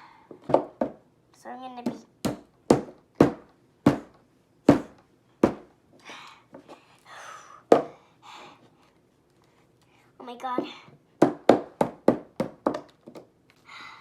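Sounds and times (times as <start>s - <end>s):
toy tool knocking on hard block: 11.2s - 12.9s.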